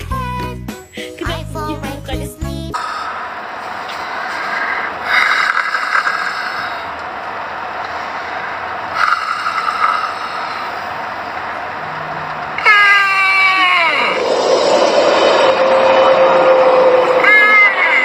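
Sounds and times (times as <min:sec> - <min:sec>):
steady hiss: 0:02.8 - 0:12.8
person snoring: 0:04.4 - 0:06.9, 0:09.0 - 0:10.8.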